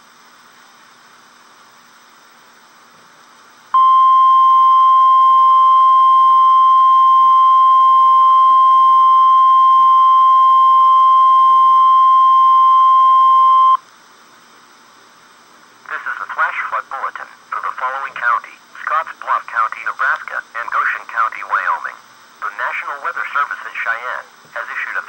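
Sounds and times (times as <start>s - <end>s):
high pure alert tone: 3.8s - 13.8s.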